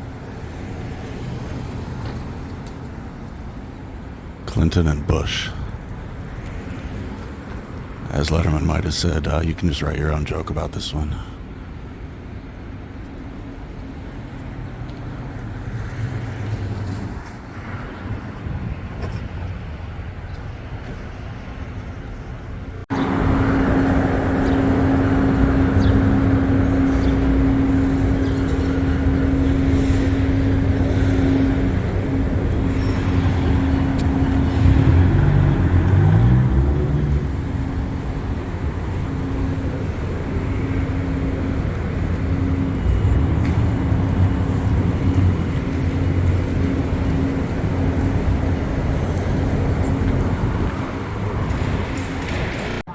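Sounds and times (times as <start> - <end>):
cars passing: 0.0 - 52.9
steady engine hum: 0.0 - 52.9
vehicle speeding up: 22.9 - 52.8.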